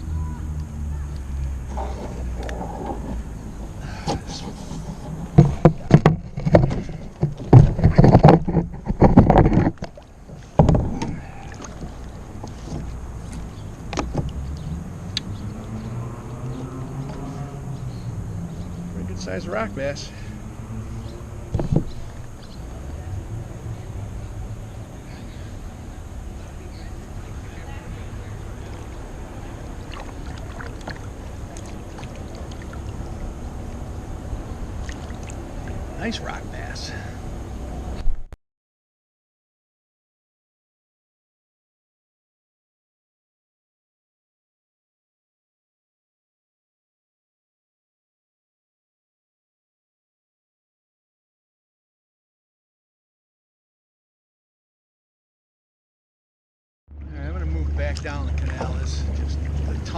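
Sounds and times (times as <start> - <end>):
knocks and thumps on kayak hull: 4.0 - 14.5, 21.5 - 22.2
water splashes and drips: 9.8 - 15.7, 28.5 - 36.0, 57.5 - 59.9.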